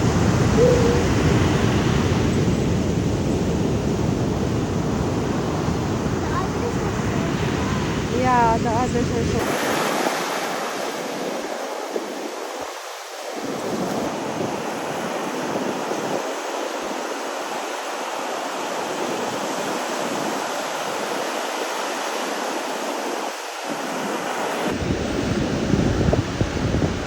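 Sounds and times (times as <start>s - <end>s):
ocean surf: 0.0s - 27.0s
wind on microphone: 0.0s - 27.0s.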